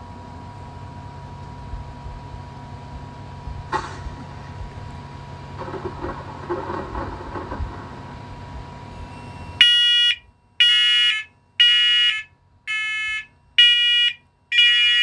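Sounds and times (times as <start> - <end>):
smoke alarm beeping: 9.1 - 15.0.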